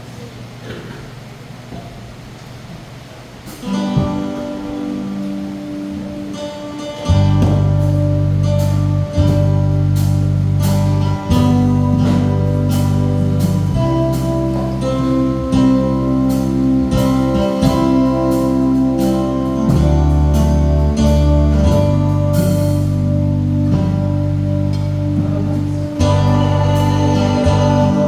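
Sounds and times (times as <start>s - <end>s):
strummed guitar chords: 3.4s - 28.0s.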